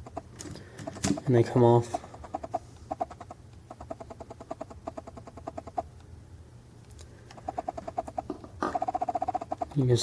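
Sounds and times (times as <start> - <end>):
small animal chirping: 0.9 - 5.9, 7.3 - 10.0.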